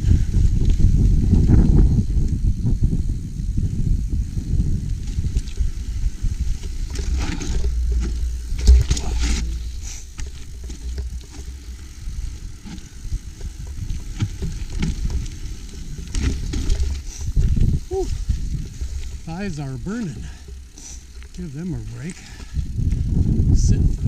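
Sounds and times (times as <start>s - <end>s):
bike rattling: 0.0s - 24.0s
wind rumble on microphone: 0.0s - 24.0s
bike tyres knocking over planks: 5.0s - 21.4s.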